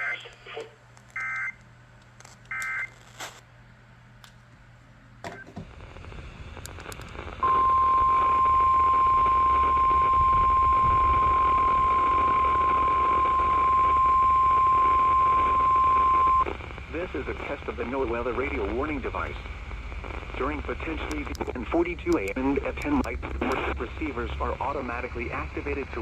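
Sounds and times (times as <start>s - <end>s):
static hiss: 5.7s - 26.0s.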